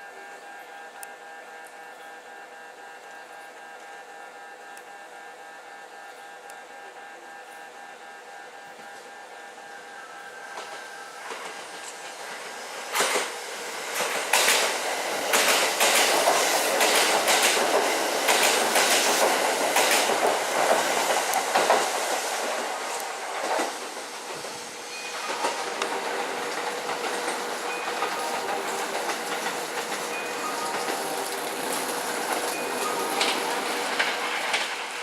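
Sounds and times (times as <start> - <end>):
electric train passing: 7.8 - 35.0
wheels clacking over rail joints: 13.0 - 22.7, 25.3 - 35.0.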